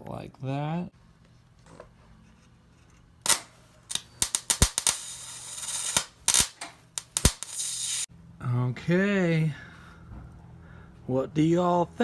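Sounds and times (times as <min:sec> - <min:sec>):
welder crackling bursts: 0:03.2 - 0:08.1.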